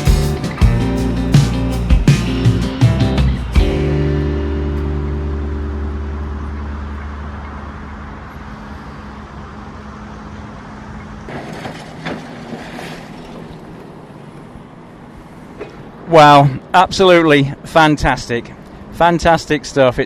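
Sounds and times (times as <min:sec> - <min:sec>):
guitar chord ringing: 0:00.0 - 0:08.4
outdoor background noise: 0:03.4 - 0:20.0.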